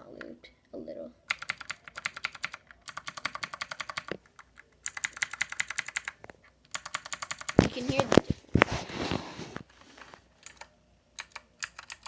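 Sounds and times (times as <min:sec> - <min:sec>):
mechanical keyboard clicks: 0:01.3 - 0:07.8, 0:10.4 - 0:12.0.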